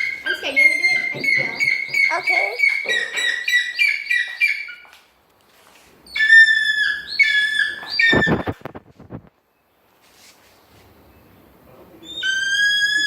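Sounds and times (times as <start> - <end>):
bird whistled calls: 12.0 - 13.0.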